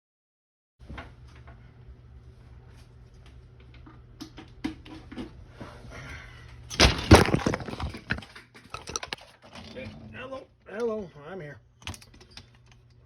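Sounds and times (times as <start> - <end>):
crackling and clattering burst: 6.7 - 9.2.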